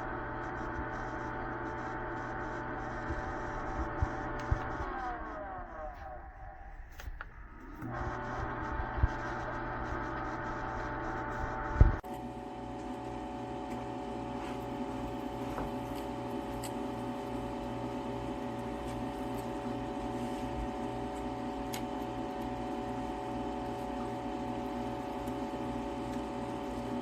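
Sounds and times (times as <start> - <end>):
fast low pulsing: 0.0 - 12.0
ice maker humming: 0.0 - 27.0.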